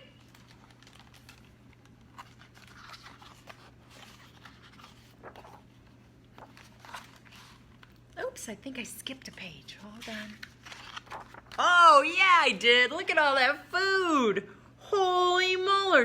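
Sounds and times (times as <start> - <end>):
paper pages turning: 0.0 - 8.2, 9.1 - 11.9.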